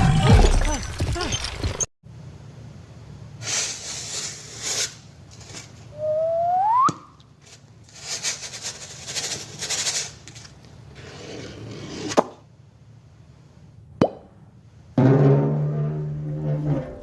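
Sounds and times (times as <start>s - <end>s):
rustling scraping noise: 3.4s - 5.9s, 7.4s - 12.2s, 15.0s - 17.0s.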